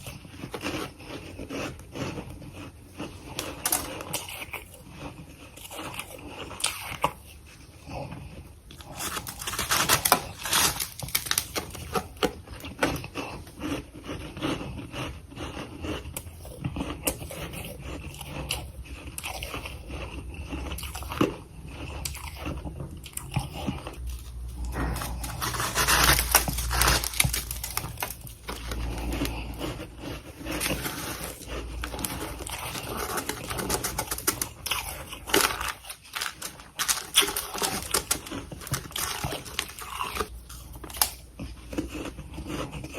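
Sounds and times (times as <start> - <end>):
chewing crunchy frost: 0.0 - 42.9.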